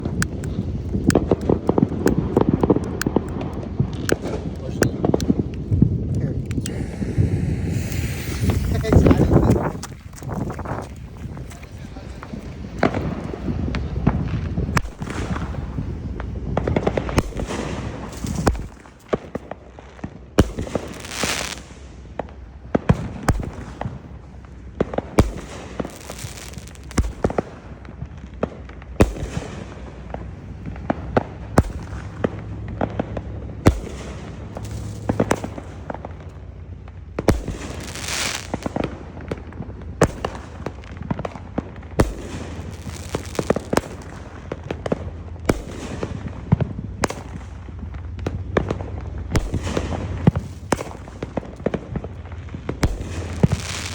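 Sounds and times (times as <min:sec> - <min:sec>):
firework bangs: 0:00.0 - 0:53.9
firework hissing bursts: 0:06.5 - 0:12.1, 0:20.6 - 0:21.9, 0:25.2 - 0:27.5, 0:33.7 - 0:36.2, 0:37.3 - 0:38.8.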